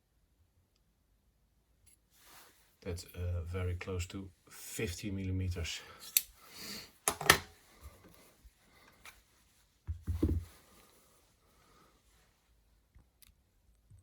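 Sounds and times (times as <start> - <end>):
metal clicks and knocks: 7.1 - 7.5.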